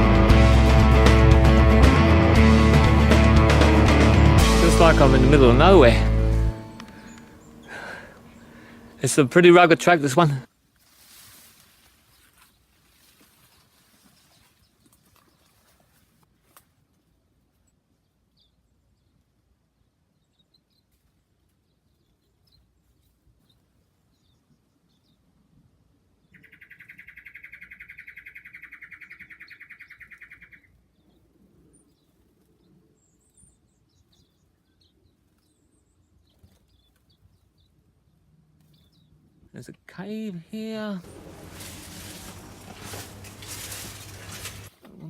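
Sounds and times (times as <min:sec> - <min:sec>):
small birds chirping: 0:06.5 - 0:10.4, 0:18.0 - 0:25.3, 0:26.2 - 0:45.0
loud rapid bird trill: 0:06.6 - 0:09.6, 0:26.3 - 0:30.7.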